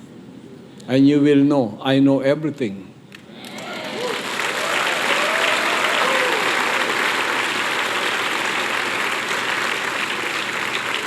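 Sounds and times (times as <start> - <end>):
congregation applauding: 3.4 - 11.0.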